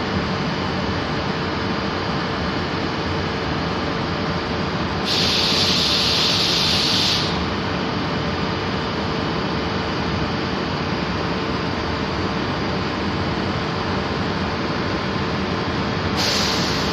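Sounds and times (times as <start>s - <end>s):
loud hiss: 5.0s - 7.5s, 16.2s - 16.9s.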